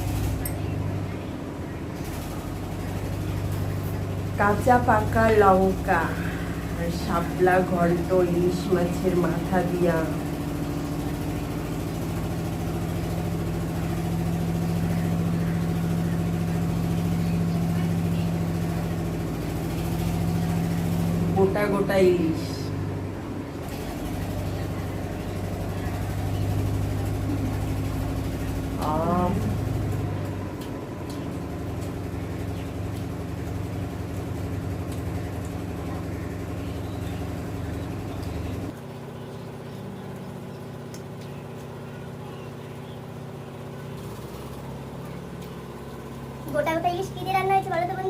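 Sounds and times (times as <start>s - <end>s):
low mechanical hum: 0.0s - 48.0s.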